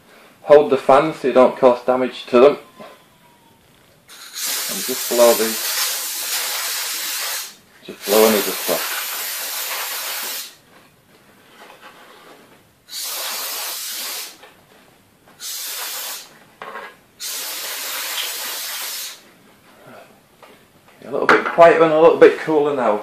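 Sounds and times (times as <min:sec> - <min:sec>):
compressed air hissing blasts: 0:04.1 - 0:10.6, 0:12.8 - 0:14.5, 0:15.4 - 0:16.4, 0:17.2 - 0:19.3.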